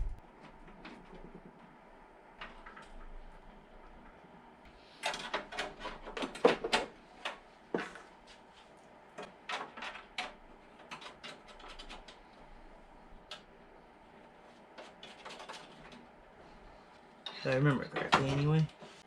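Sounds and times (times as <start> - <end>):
computer parts clicking and knocking: 5.0 - 7.9, 9.2 - 12.2, 14.8 - 16.0.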